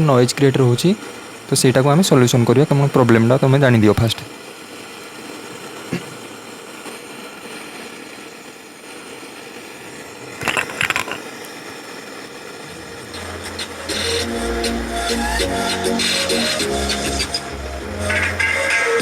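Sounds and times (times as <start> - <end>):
speaker hiss and buzz: 0.0 - 19.0
rattle of clicks: 10.4 - 11.2
music: 13.1 - 19.0.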